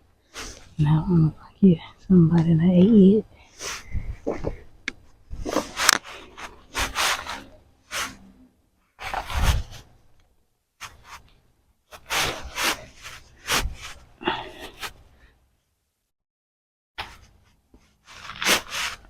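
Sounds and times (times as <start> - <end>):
digging scrapes in loose soil: 5.3 - 8.3, 11.9 - 15.0, 18.0 - 19.0.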